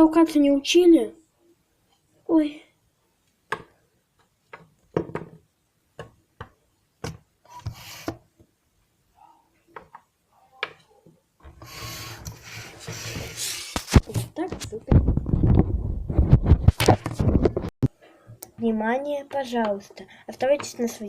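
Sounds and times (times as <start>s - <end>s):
toys rubbing and scraping: 7.5s - 8.2s, 11.4s - 14.9s.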